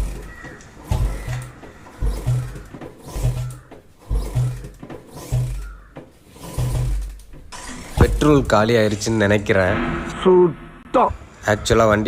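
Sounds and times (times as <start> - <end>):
motorcycle engine kick-start: 0.0 - 5.8, 6.4 - 8.7.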